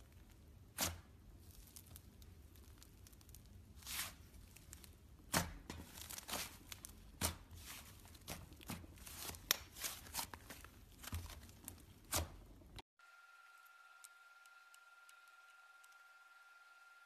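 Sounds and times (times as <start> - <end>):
slime squishing by hand: 0.0 - 12.8.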